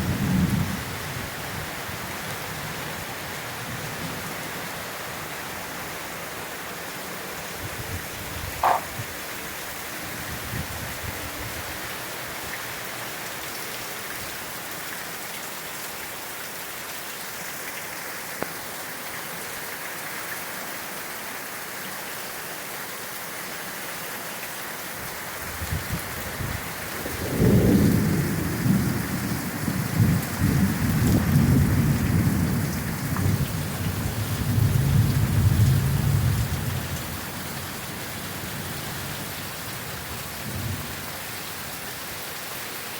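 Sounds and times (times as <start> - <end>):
rain falling: 0.0 - 42.9
rolling thunder: 27.0 - 33.6.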